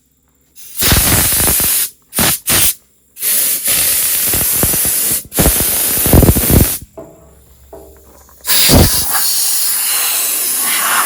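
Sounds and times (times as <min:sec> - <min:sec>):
high-pressure spray bursts: 0:00.6 - 0:06.8, 0:08.5 - 0:11.0.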